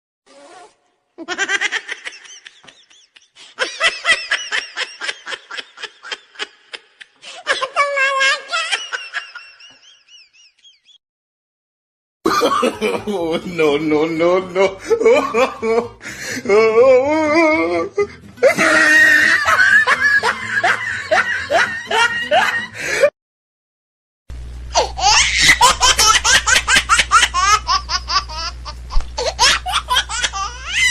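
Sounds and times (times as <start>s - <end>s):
wheezy giggles: 1.2s - 7.8s
person laughing hard: 1.2s - 11.0s, 12.3s - 23.1s, 24.8s - 30.9s.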